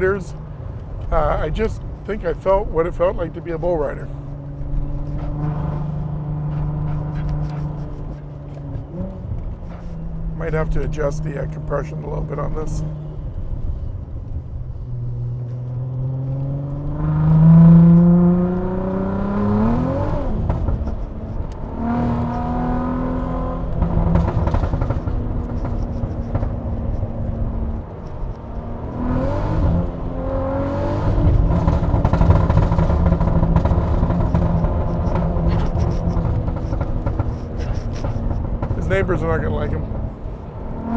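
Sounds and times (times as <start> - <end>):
car engine accelerating: 0.0 - 40.9.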